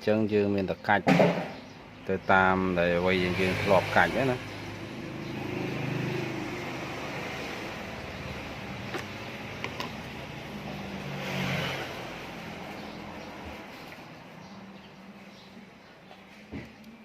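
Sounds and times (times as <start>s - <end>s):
vehicle engine running: 3.2s - 11.2s.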